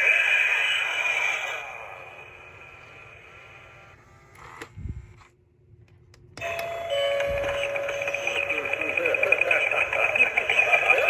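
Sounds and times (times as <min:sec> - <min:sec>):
doorbell two-note chime: 0:06.4 - 0:08.1.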